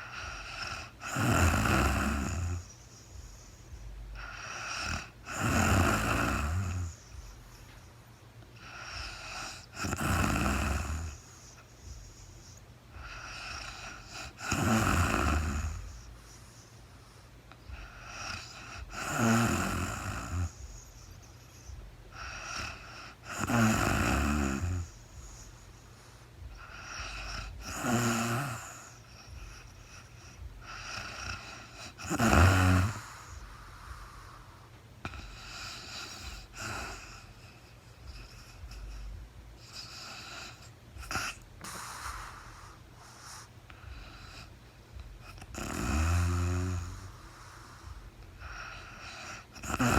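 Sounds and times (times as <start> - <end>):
woman snoring: 0.0 - 7.7, 8.6 - 16.6, 17.7 - 25.7, 26.4 - 49.9
soft breath: 2.5 - 5.5, 6.4 - 10.0, 10.6 - 14.5, 15.6 - 19.0, 20.2 - 23.3, 24.8 - 27.7, 32.8 - 45.5, 46.8 - 49.6.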